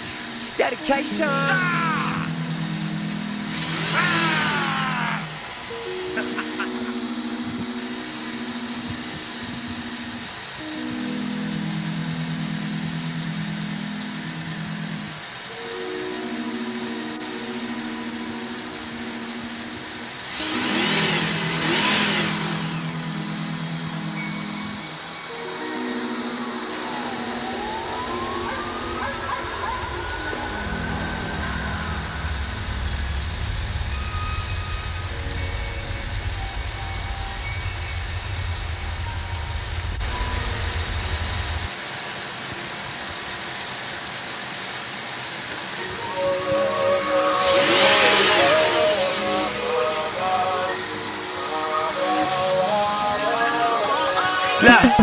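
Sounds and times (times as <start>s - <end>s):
faint hiss: 0.0s - 55.0s
car engine idling and revving: 27.8s - 45.8s.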